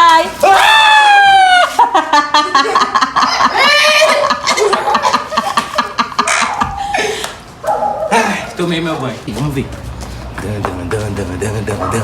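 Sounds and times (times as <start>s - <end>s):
excited voices: 0.0s - 2.0s, 3.2s - 5.0s
people laughing and giggling: 1.3s - 7.6s.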